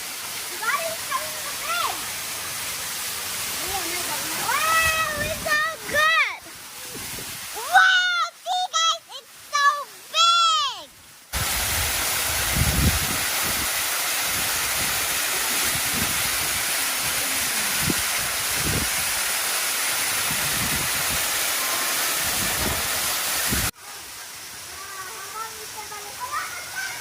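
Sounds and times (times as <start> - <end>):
waterfall rushing: 0.0 - 27.0
wind buffeting microphone: 4.4 - 6.0, 6.9 - 7.5, 11.4 - 19.3, 20.1 - 21.4, 22.2 - 23.7.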